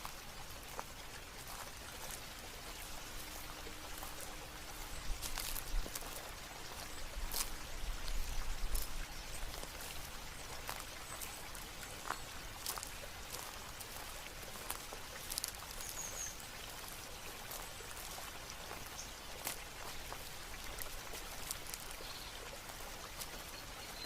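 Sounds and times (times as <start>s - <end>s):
water trickling and dripping: 0.0s - 24.0s.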